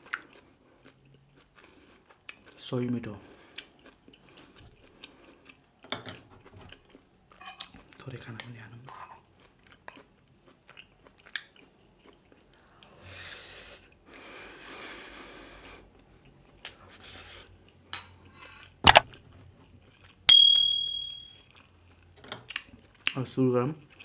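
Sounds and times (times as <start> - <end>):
cutlery clinking on a plate: 20.3 - 21.3.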